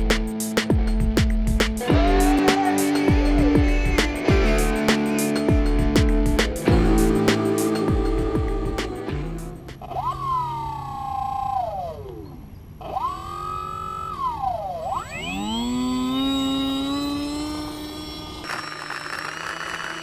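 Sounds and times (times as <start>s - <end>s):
model plane motor whining: 12.8s - 20.0s.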